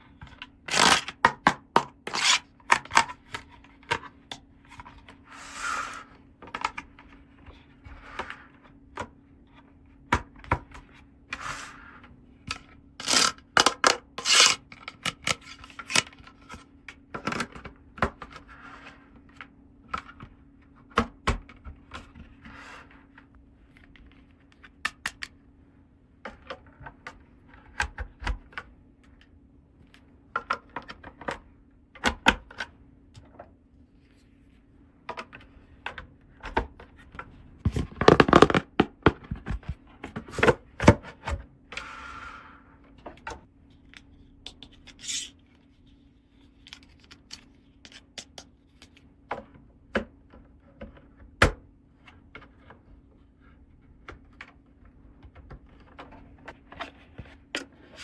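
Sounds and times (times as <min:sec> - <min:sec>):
plastic pieces clicking: 0:00.7 - 0:01.4, 0:13.0 - 0:16.1
rubbing and scraping: 0:13.0 - 0:14.6.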